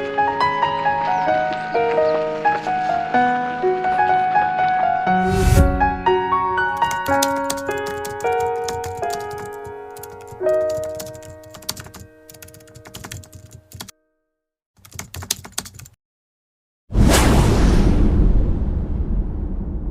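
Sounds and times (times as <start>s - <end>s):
soft piano music: 0.0s - 14.3s
rapid clicking: 6.8s - 13.9s.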